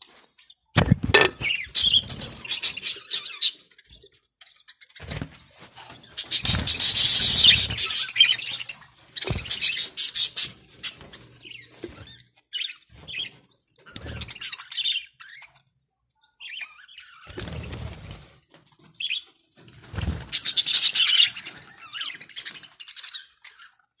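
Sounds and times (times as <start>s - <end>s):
budgerigars chirping and chattering: 1.3s - 18.3s, 19.0s - 23.9s.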